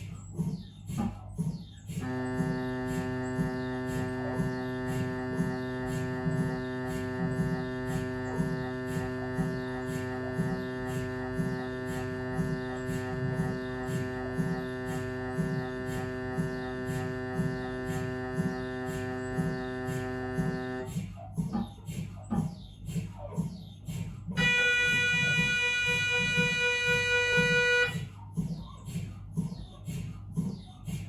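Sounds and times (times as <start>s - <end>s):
mri scanner pulsing buzzing hum: 2.0s - 20.9s, 24.4s - 28.1s.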